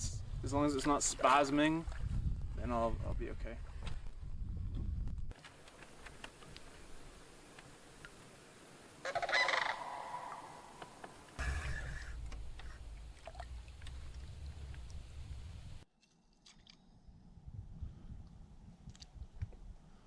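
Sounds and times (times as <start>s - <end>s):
large bird buzzy call: 9.0s - 15.7s
low rumble: 11.4s - 15.8s.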